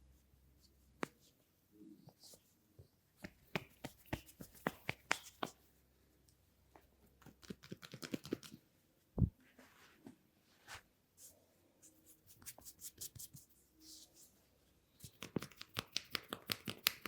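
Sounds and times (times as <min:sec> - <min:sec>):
hands clicking and tapping: 0:03.2 - 0:05.6, 0:07.2 - 0:08.6, 0:15.0 - 0:17.0.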